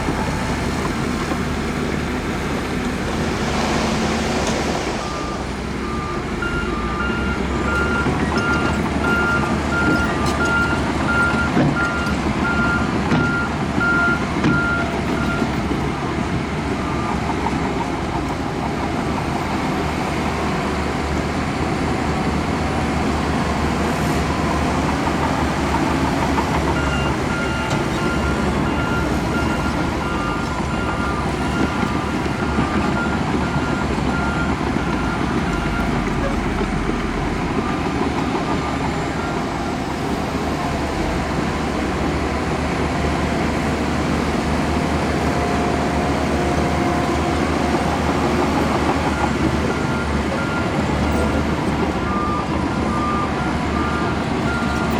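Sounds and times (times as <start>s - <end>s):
heavy diesel machinery running: 0.0s - 54.9s
reversing alarm beeping: 5.0s - 15.6s, 26.4s - 36.7s, 48.2s - 54.9s.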